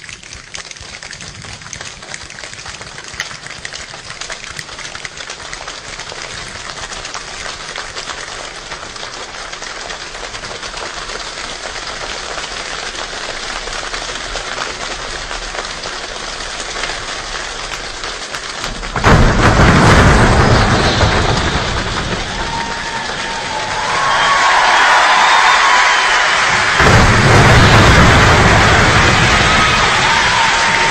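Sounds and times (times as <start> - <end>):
hands imitating rain patter: 0.0 - 20.4.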